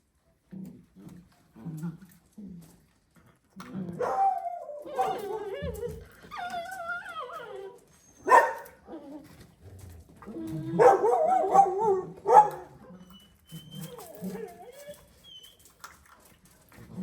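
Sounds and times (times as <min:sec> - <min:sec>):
puppies whining and barking: 0:04.0 - 0:09.4, 0:10.5 - 0:16.0
puppy sharp yelps: 0:08.2 - 0:08.8, 0:10.8 - 0:12.7.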